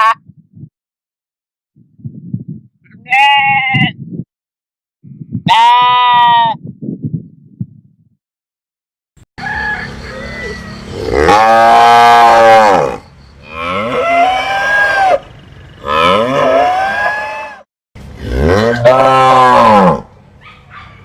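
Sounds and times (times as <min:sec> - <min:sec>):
cattle mooing: 0:10.9 - 0:17.6, 0:18.2 - 0:20.1.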